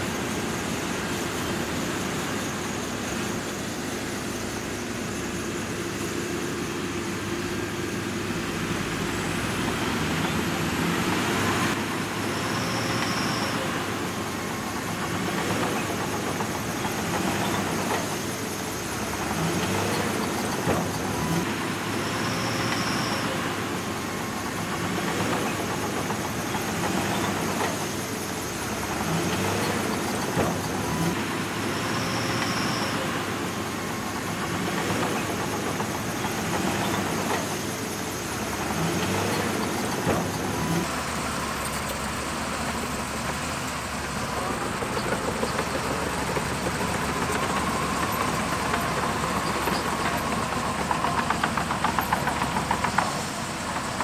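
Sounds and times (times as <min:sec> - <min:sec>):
bulldozer diesel engine: 0:00.0 - 0:54.0
rapid clatter: 0:41.6 - 0:54.0.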